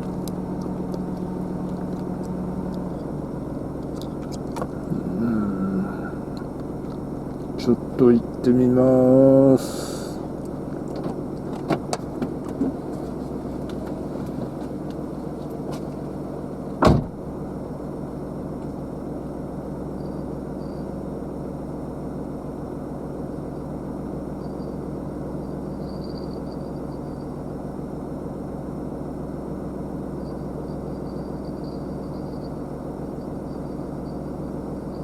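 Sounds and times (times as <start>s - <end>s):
engine droning: 0.0s - 35.0s
loud knock: 16.8s - 17.2s.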